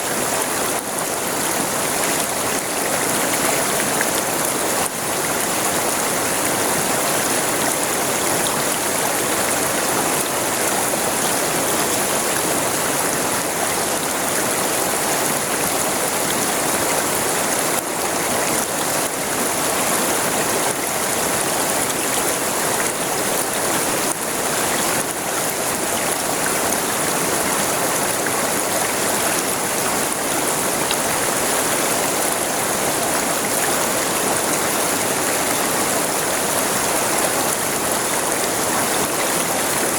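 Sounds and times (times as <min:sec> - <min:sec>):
river water rushing: 0:00.0 - 0:39.9.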